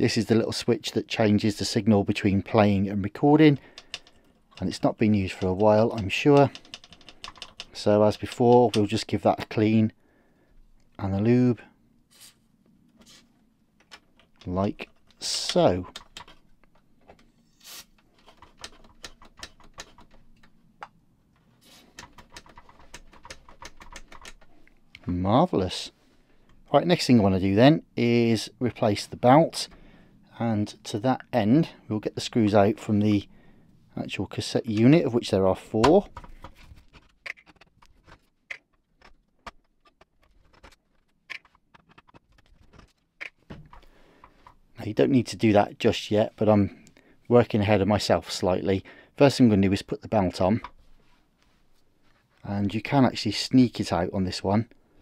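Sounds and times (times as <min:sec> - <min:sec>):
screwdriver clicking on screws: 0:05.4 - 0:08.8, 0:18.2 - 0:20.5.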